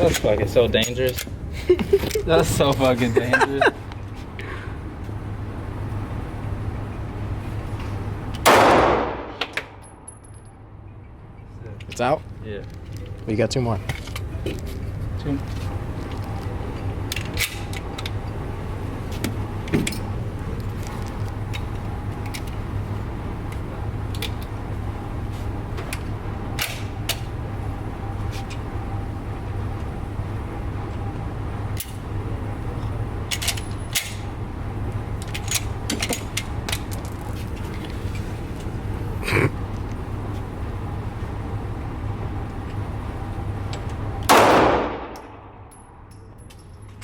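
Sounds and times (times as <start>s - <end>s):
steady low hum: 0.0s - 47.0s
pistol shots: 8.4s - 9.5s, 44.3s - 45.5s.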